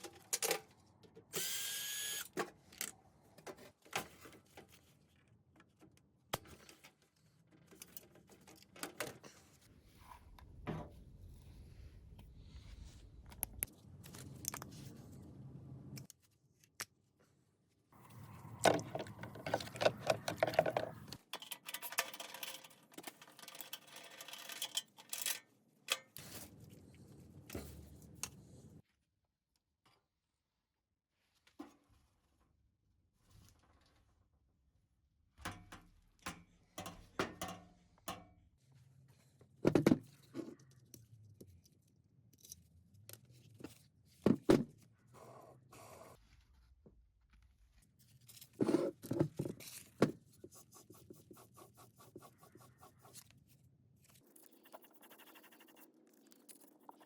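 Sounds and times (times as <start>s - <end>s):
tools clicking and knocking: 18.6s - 26.2s, 35.4s - 38.3s.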